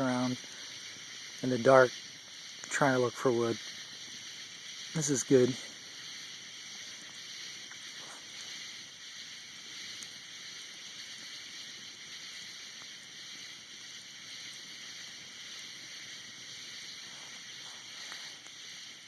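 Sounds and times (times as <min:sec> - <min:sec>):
night insects chorus: 0:00.0 - 0:19.0
faint clicks: 0:09.9 - 0:10.2.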